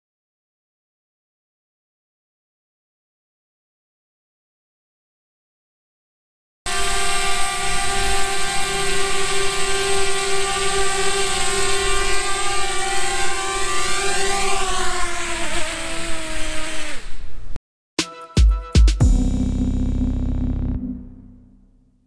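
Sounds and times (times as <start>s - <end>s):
drone propellers whining: 6.7s - 17.1s.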